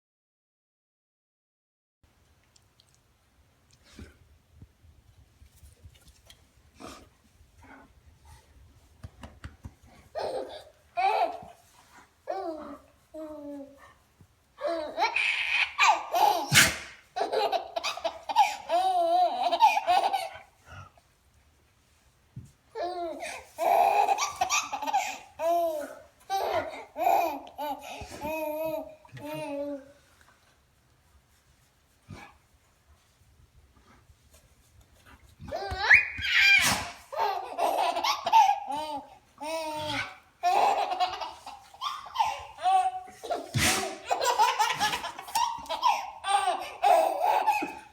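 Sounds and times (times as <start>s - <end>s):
baby laughing: 10.1s - 11.6s, 14.6s - 20.4s, 22.8s - 29.8s, 35.5s - 47.9s.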